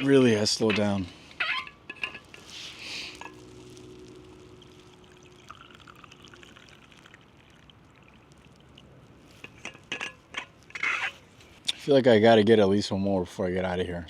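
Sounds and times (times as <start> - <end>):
coffee being poured: 1.8 - 11.4.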